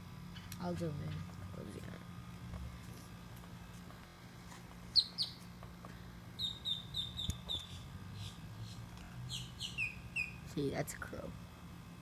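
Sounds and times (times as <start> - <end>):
small bird chirping: 4.9 - 5.5, 6.4 - 10.5.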